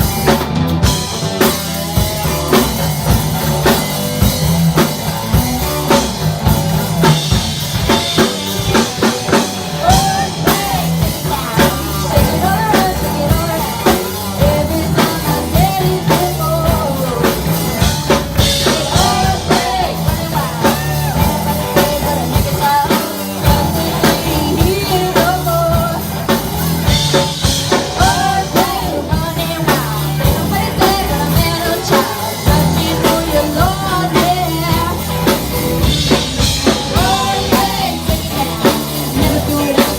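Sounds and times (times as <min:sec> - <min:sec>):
bass line: 0:00.0 - 0:39.9
drum kit beat: 0:00.0 - 0:39.9
person singing: 0:08.7 - 0:26.4, 0:27.6 - 0:35.5, 0:36.1 - 0:39.9.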